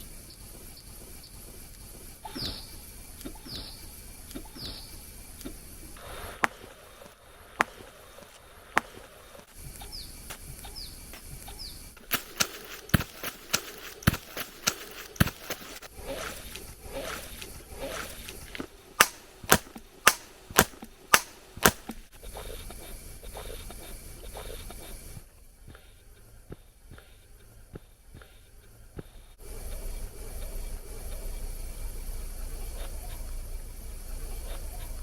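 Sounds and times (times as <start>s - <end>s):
sharp knocks: 18.6s - 22.1s.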